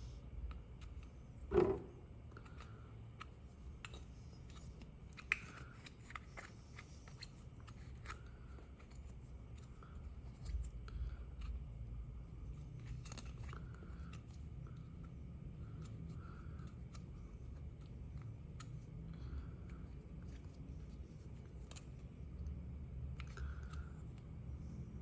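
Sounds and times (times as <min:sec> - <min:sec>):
loud knock: 0:01.5 - 0:02.0.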